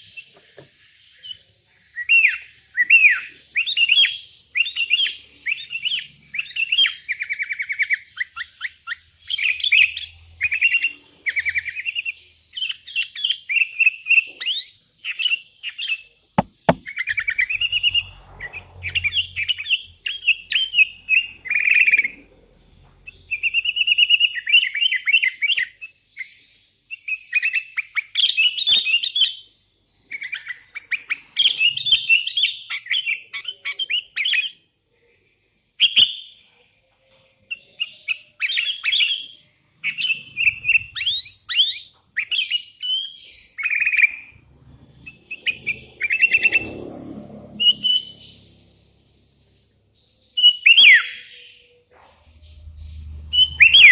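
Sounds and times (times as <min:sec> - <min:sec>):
low rumbling noise: 0:44.3 - 0:50.0, 0:51.9 - 0:53.9
bird chattering song: 0:47.5 - 0:53.9.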